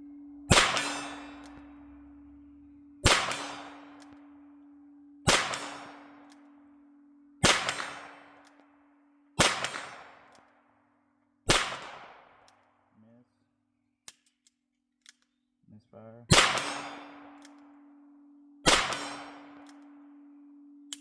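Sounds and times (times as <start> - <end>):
revolver shots echoing: 0.0 - 4.4, 5.3 - 6.4, 7.4 - 8.4, 9.4 - 10.2, 16.3 - 17.6, 18.7 - 19.8.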